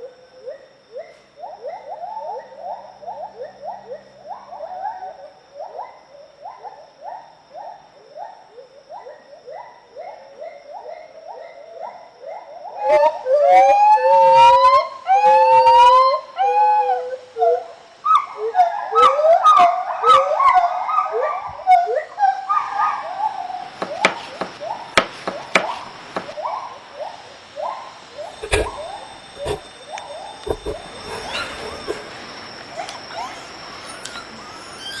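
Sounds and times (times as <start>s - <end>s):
gibbons whooping: 28.3s - 29.7s, 30.4s - 32.3s.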